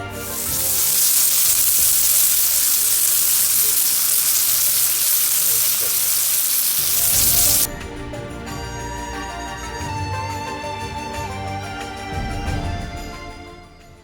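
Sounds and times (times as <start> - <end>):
food sizzling in a hot pan: 0.0 - 7.7.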